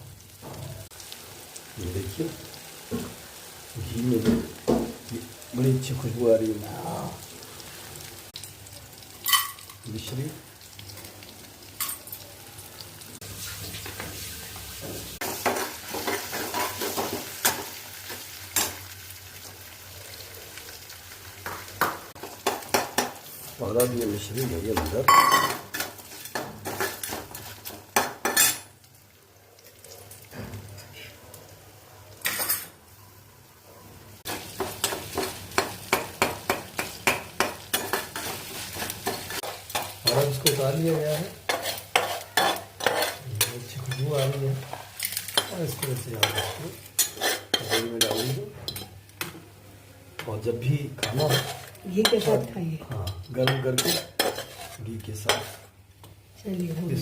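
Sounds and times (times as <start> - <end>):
spices sizzling in hot oil: 0.0 - 57.0
spoon scraping in a pan: 9.2 - 9.9, 13.2 - 18.8, 22.2 - 28.7, 34.2 - 49.4, 51.0 - 55.8
crackles: 28.6 - 32.3.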